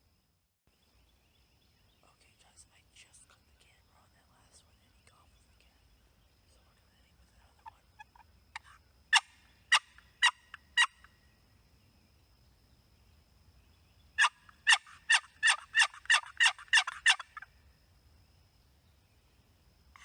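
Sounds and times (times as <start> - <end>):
turkey yelping: 8.0 - 11.1, 14.2 - 17.5.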